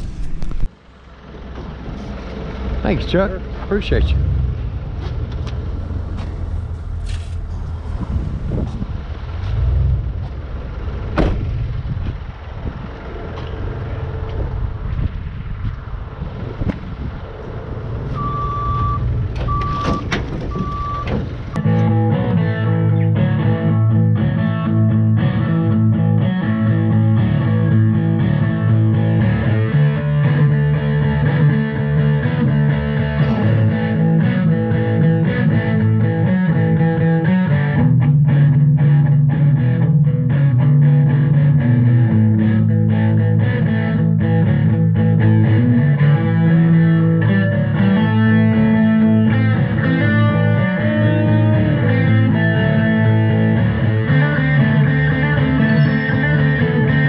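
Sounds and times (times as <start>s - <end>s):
rock music with electric guitar: 21.6s - 57.0s.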